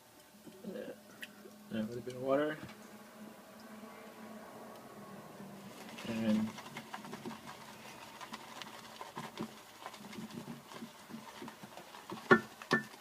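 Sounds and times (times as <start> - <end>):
shaving brush crackling in lather: 5.6 - 13.0.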